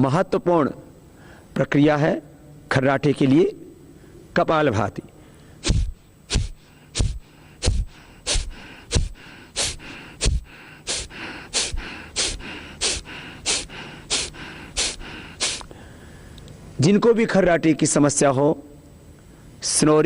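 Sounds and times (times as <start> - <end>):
man's forceful nasal exhalations: 5.5 - 16.4.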